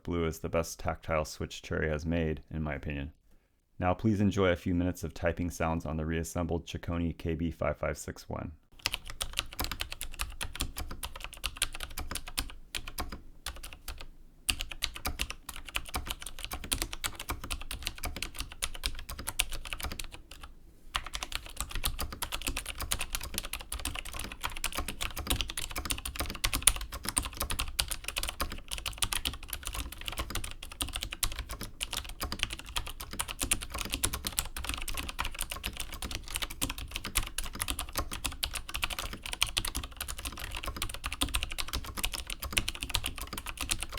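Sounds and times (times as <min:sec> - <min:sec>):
clicky keyboard typing: 0:08.8 - 0:43.9.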